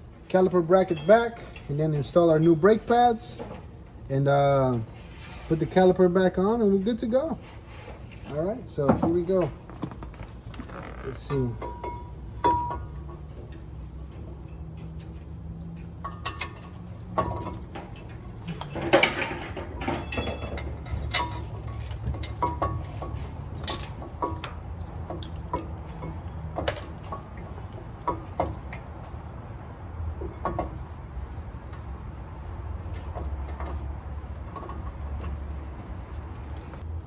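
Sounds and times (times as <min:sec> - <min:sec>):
metal clinks and knocks: 0:00.6 - 0:03.6, 0:08.8 - 0:36.8
metal clank with ring: 0:00.8 - 0:02.8, 0:11.5 - 0:13.0, 0:16.0 - 0:21.5.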